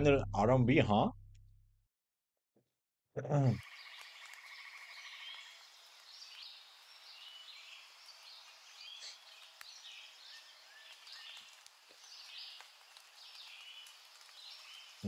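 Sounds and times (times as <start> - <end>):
frogs croaking: 3.6 - 5.8.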